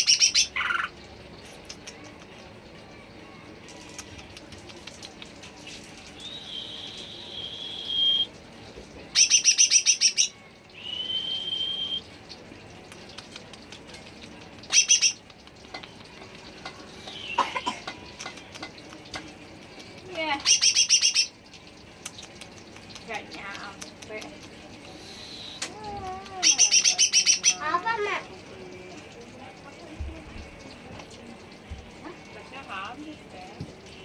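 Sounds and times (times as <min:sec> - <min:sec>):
bird whistling: 0:06.2 - 0:08.3, 0:09.2 - 0:12.0
bird rattling trills: 0:14.6 - 0:15.3, 0:20.1 - 0:21.3.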